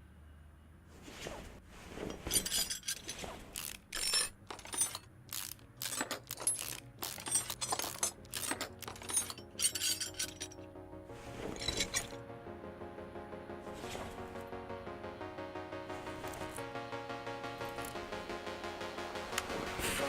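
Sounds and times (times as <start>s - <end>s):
metallic clinks and clatters: 2.1s - 10.6s, 11.6s - 12.2s.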